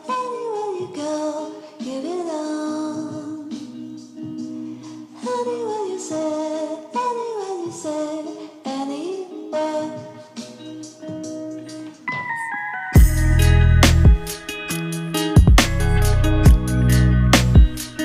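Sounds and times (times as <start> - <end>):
person singing a sliding melody: 0.0 - 13.9
background music: 0.0 - 18.0.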